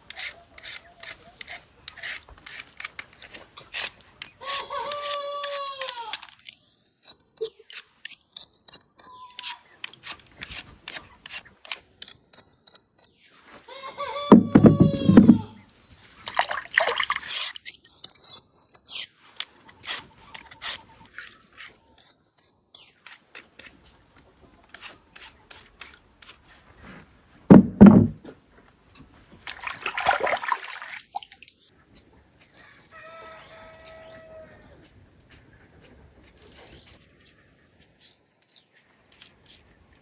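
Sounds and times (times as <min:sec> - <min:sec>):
sharp clicks and knocks: 0:14.3 - 0:15.5, 0:27.5 - 0:28.4
water splashing and pouring: 0:16.1 - 0:17.6, 0:29.4 - 0:31.6
loud low thump: 0:27.5 - 0:28.2.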